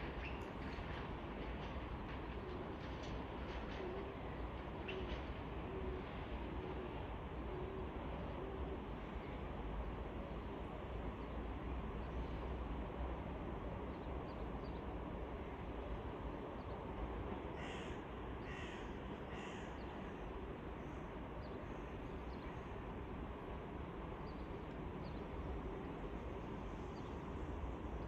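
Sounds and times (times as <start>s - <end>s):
steady background noise: 0.0s - 28.0s
crow cawing: 17.6s - 19.8s.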